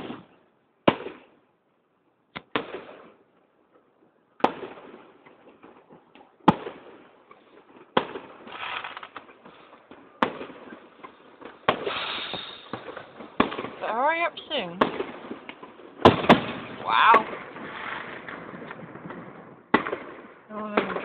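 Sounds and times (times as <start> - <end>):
fireworks bangs: 0.0 - 1.4, 4.4 - 21.0.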